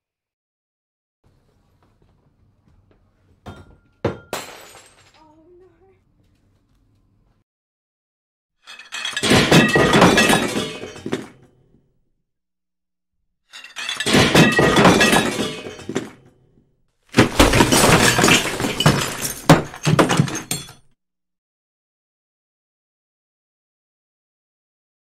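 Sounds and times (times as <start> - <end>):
glass shattering: 3.5 - 5.2, 8.6 - 11.4, 13.5 - 16.2, 17.2 - 20.9
glass shards tinkling: 17.4 - 20.9.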